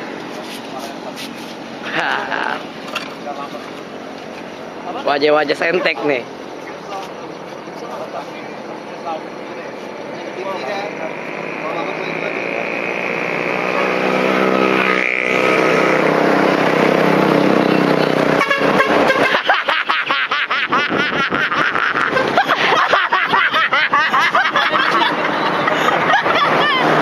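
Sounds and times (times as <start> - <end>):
truck horn blast: 14.7 - 16.2, 18.1 - 19.5
short changing horn tones: 18.4 - 19.4.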